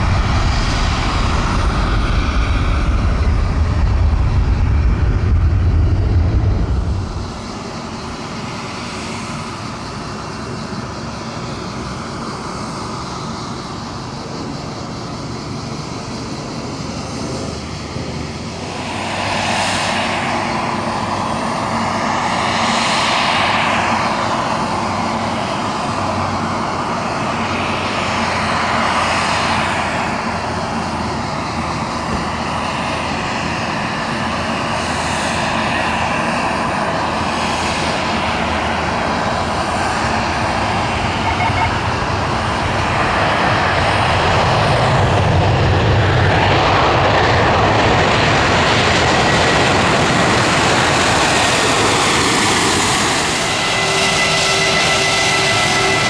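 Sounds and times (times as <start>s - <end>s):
airliner engines rushing: 0.0s - 56.0s
faint high turbine whine: 0.0s - 56.0s.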